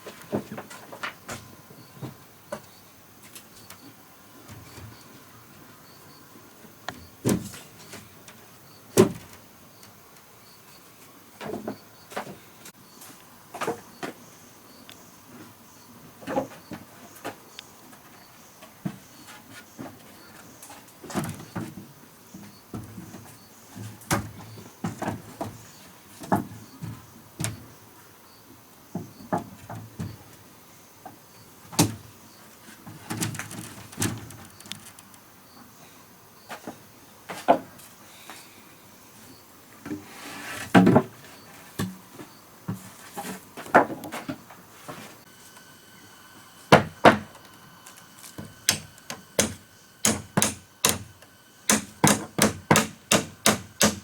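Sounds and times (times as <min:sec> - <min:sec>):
wood knocks and clunks: 0:06.9 - 0:08.1, 0:09.0 - 0:09.4, 0:21.0 - 0:25.6, 0:28.9 - 0:30.2, 0:31.7 - 0:32.1, 0:36.6 - 0:37.8, 0:39.8 - 0:41.2, 0:42.7 - 0:45.0, 0:46.7 - 0:47.4.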